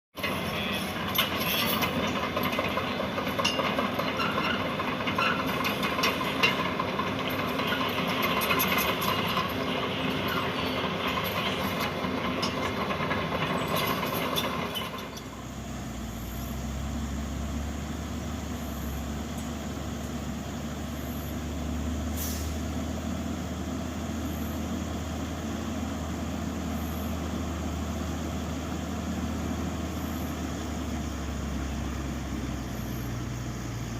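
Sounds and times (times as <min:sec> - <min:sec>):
rattles and clicks: 0:00.2 - 0:15.4
excavator engine running: 0:00.2 - 0:33.9.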